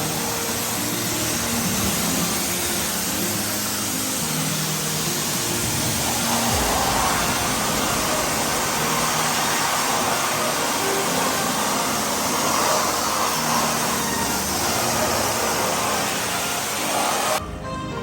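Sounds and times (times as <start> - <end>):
pressure washer spraying water: 0.0 - 17.4.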